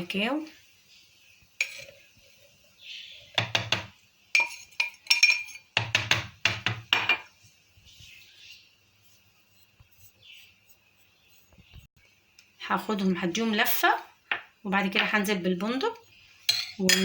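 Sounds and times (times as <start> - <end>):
utensils clinking against container: 4.4 - 5.7.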